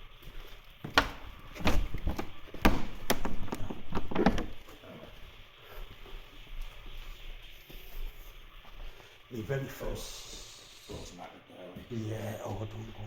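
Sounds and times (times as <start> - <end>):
sharp knocks and thuds: 0.8 - 4.6.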